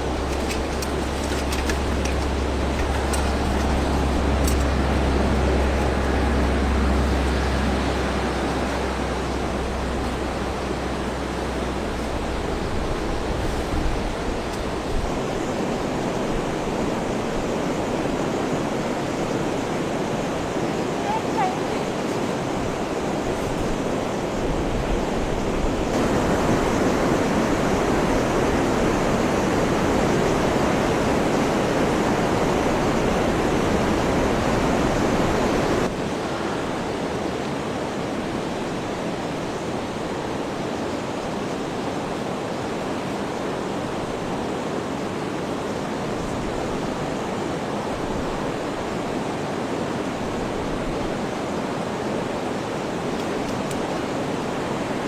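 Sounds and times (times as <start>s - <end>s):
heavy rain falling: 0.0s - 40.3s.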